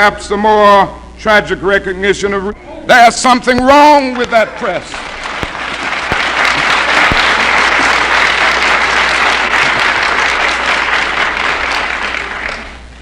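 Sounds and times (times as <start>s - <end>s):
audience applauding: 4.0s - 12.9s.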